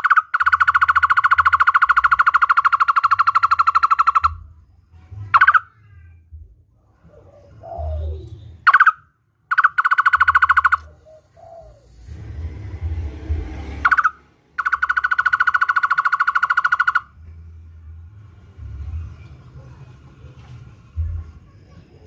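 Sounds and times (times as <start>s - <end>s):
barbet calling with fast trill: 0.0s - 4.5s, 5.3s - 5.8s, 7.6s - 11.9s, 13.8s - 17.2s.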